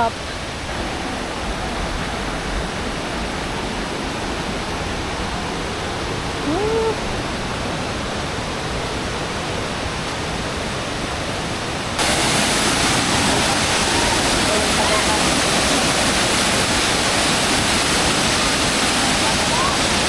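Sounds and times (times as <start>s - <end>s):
waterfall rushing: 0.0s - 20.0s
short rising call: 6.4s - 7.0s.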